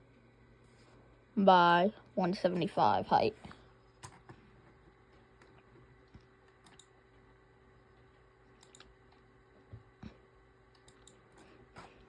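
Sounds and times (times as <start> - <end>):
low steady hum: 0.0 - 12.0
computer mouse and keyboard clicks: 4.0 - 4.4, 5.4 - 6.9, 8.6 - 9.2, 10.7 - 11.9.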